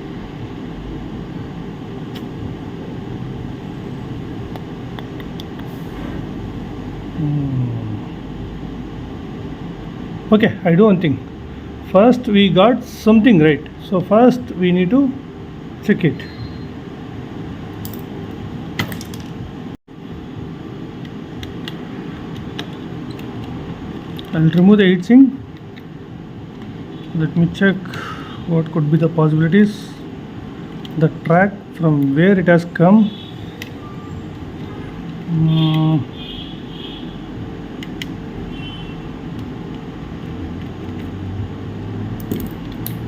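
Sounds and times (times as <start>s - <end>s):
fan whirring: 0.0s - 43.0s
low machine hum: 0.0s - 43.0s.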